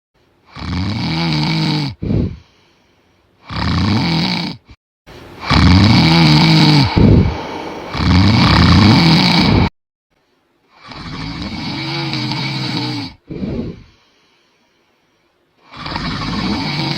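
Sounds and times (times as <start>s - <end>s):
man snoring loudly: 0.5s - 2.5s, 3.4s - 4.8s, 5.4s - 9.7s, 10.8s - 13.9s, 15.7s - 16.9s.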